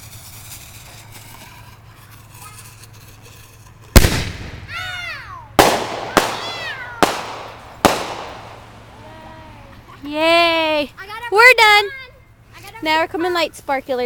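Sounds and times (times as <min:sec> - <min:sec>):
fireworks bangs: 0:03.4 - 0:09.8.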